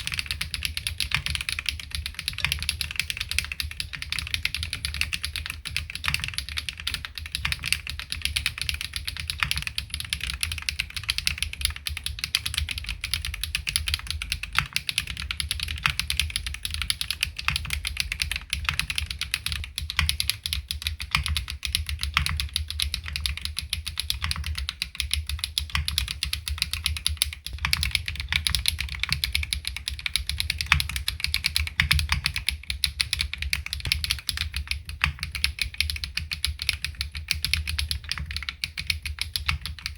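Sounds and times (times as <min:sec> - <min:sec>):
rapid typing on mechanical keyboard: 0:00.0 - 0:39.9.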